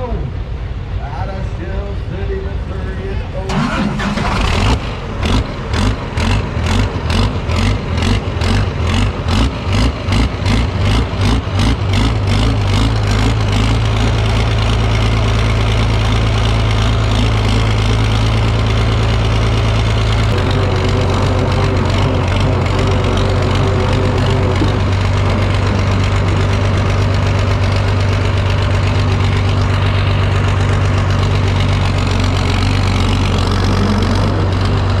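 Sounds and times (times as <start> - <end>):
engine running unevenly then idling: 0.0 - 35.0.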